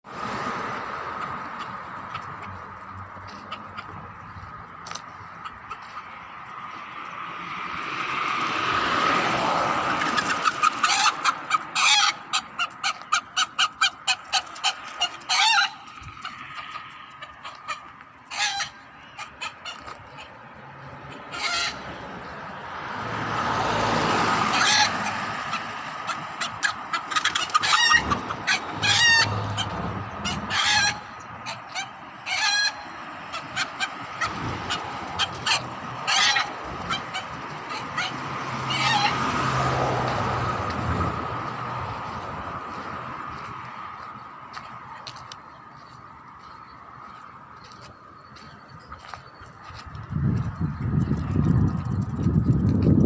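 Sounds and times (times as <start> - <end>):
hens clucking: 0.8 - 52.4.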